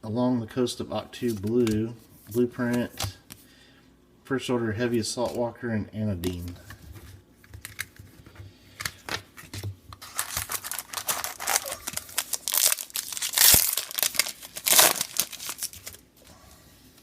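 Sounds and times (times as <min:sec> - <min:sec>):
foil wrapper tearing and crinkling: 0:10.0 - 0:16.0.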